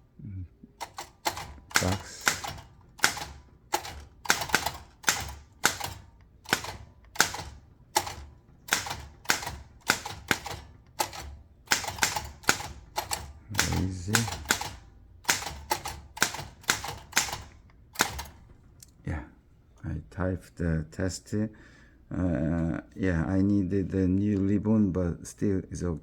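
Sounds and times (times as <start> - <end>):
manual typewriter typing: 0.7 - 18.8.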